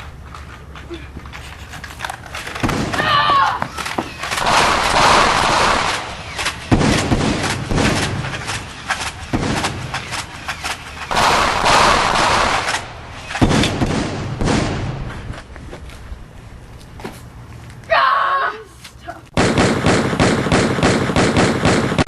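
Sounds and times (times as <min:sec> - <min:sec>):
loud rushing blasts: 0:02.6 - 0:15.4
rapid gunfire bursts: 0:04.3 - 0:14.9, 0:19.4 - 0:22.0.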